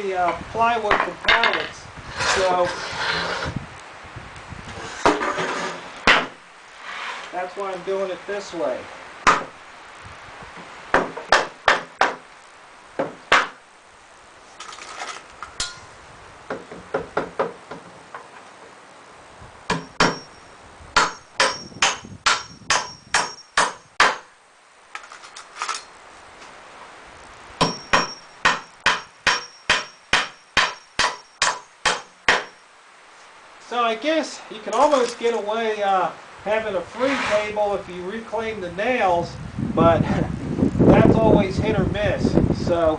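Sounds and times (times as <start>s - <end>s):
hammer striking nails into wood: 6.1s - 6.4s, 9.3s - 9.5s, 10.9s - 12.2s, 13.0s - 13.6s, 19.7s - 20.3s, 21.0s - 24.3s, 27.6s - 32.6s.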